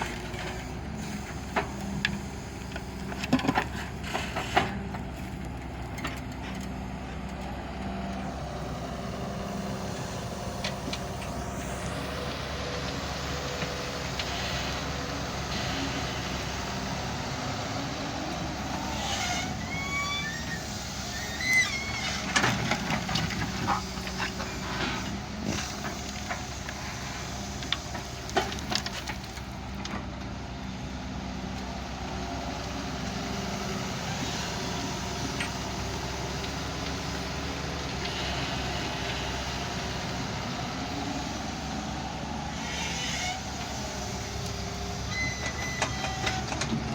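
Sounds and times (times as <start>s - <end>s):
excavator diesel engine running: 0.0s - 46.9s
metallic squeaks: 18.8s - 22.2s, 45.1s - 46.5s.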